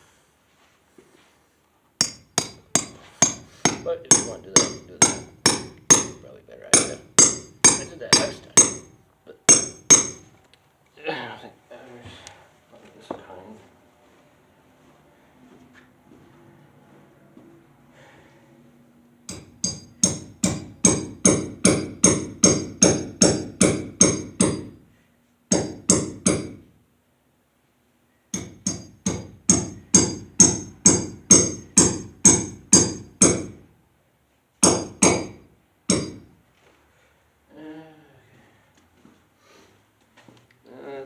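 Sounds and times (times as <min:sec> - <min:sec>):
hammer striking metal anchor: 0:02.0 - 0:10.3, 0:19.3 - 0:24.8, 0:25.5 - 0:26.7, 0:28.3 - 0:33.6, 0:34.6 - 0:36.4.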